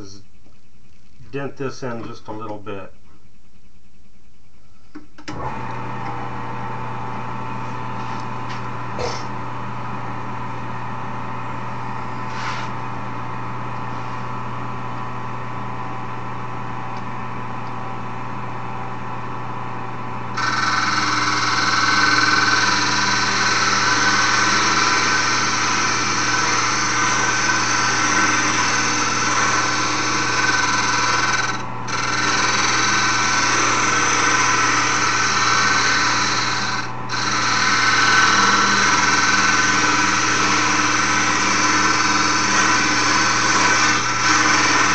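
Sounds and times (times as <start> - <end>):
wood lathe running: 5.2 - 7.0, 20.3 - 44.9
turning tool scraping wood: 20.4 - 44.9.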